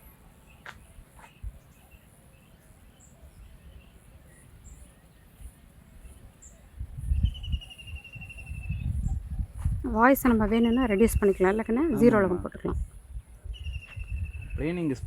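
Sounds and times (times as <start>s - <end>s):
faint bird chirps: 0.4s - 9.4s, 13.4s - 14.7s.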